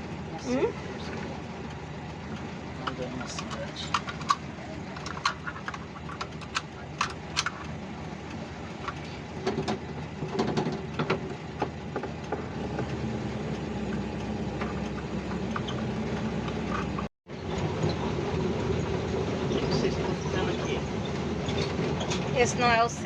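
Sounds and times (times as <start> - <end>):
van engine running: 0.0 - 23.0
irregular clicks and knocks: 2.3 - 13.0, 13.8 - 17.1.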